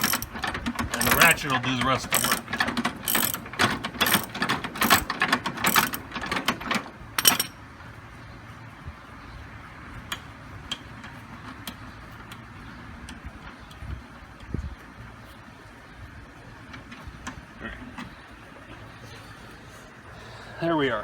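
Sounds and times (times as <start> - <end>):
socket ratchet clicking: 0.0 - 7.5.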